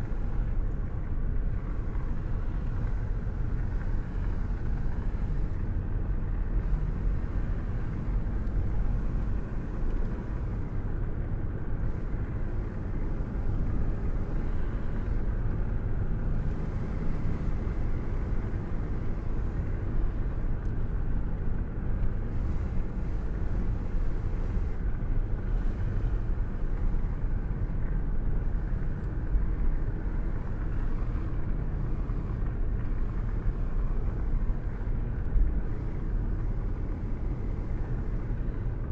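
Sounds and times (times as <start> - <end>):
road and wind noise: 0.0 - 38.9.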